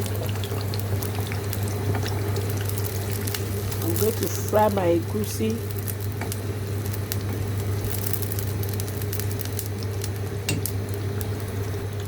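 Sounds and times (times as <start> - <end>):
oil sizzling with crackles: 0.0 - 12.0.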